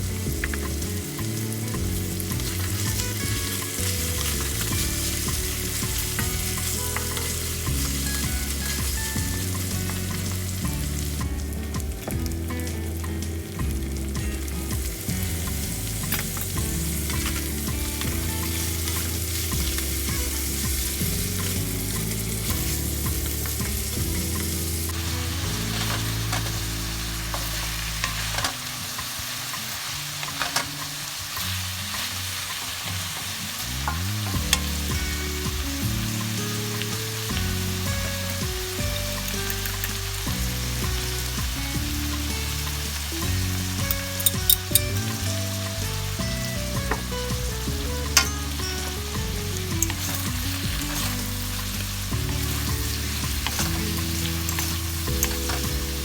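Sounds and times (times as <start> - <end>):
food sizzling in a frying pan: 0.0 - 56.0
utensil clicking against pan: 43.8 - 45.0.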